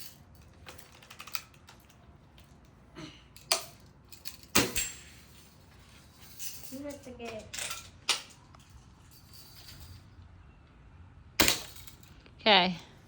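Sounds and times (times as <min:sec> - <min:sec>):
bb guns clicking and snapping: 0:03.4 - 0:04.9.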